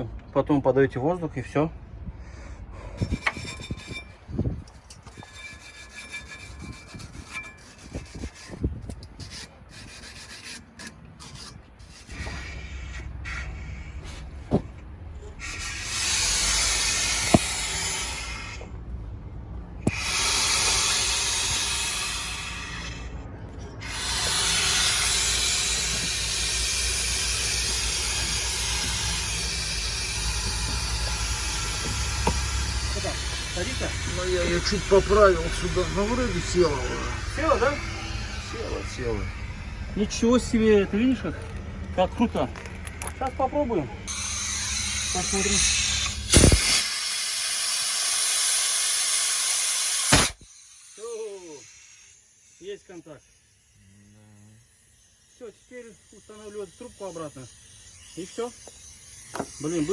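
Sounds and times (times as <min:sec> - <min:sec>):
rubbing and scraping: 0:03.0 - 0:18.6
low hum: 0:11.8 - 0:46.8, 0:50.2 - 0:59.9
compressed air hissing: 0:12.0 - 0:18.7, 0:19.9 - 0:23.2, 0:23.8 - 0:41.5, 0:44.1 - 0:59.9.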